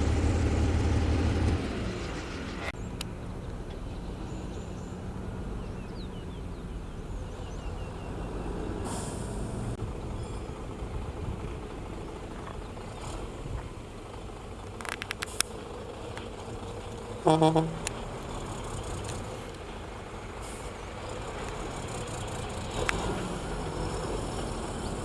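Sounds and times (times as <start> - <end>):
diesel engine running: 0.0 - 25.0
short hiss: 8.9 - 9.8.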